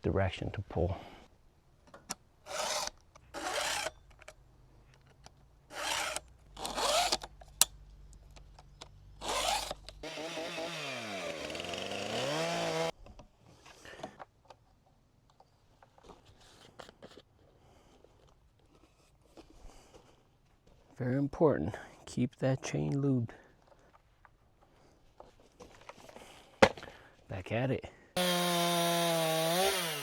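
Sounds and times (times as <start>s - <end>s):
chainsaw chain rasping against file: 2.4s - 4.1s, 5.7s - 7.3s, 9.2s - 12.9s, 28.2s - 30.0s.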